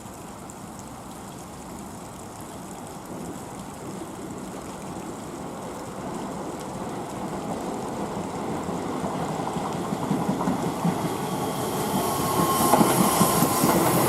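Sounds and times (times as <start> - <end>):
electric train wheels rumbling on rail: 5.3 - 14.0.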